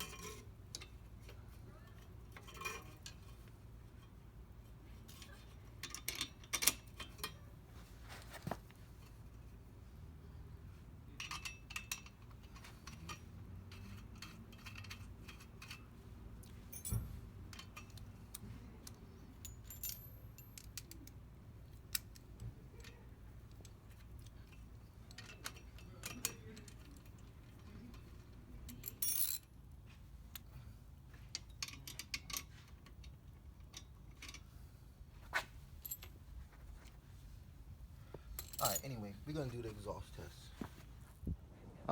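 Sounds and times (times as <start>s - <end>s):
low steady hum: 0.0s - 41.9s
metallic tool clinks: 16.7s - 18.0s.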